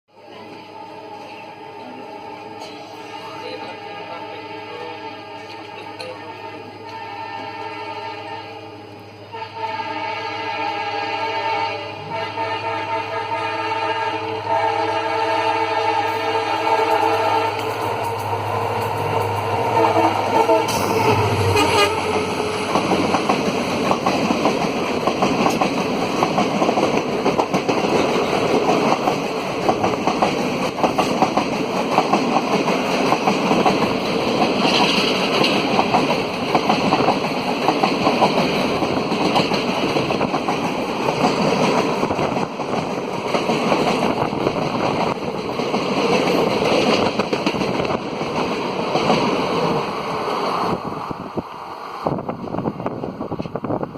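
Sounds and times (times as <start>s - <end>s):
train wheels clattering on rails: 17.0s - 50.9s.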